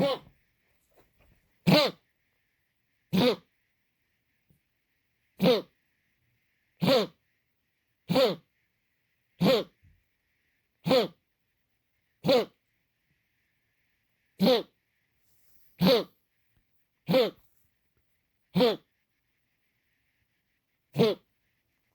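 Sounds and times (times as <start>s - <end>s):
animal coughing: 0.0s - 0.3s, 1.6s - 2.1s, 3.1s - 3.5s, 5.4s - 5.8s, 6.8s - 7.2s, 8.0s - 8.5s, 9.4s - 9.8s, 10.8s - 11.2s, 12.2s - 12.6s, 14.4s - 14.8s, 15.8s - 16.2s, 17.0s - 17.4s, 18.5s - 18.9s, 20.9s - 21.3s.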